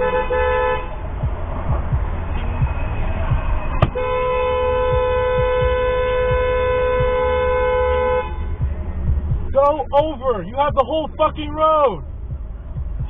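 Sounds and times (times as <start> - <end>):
car horn blast: 0.0 - 1.0, 3.7 - 8.7
low road rumble: 0.0 - 13.0.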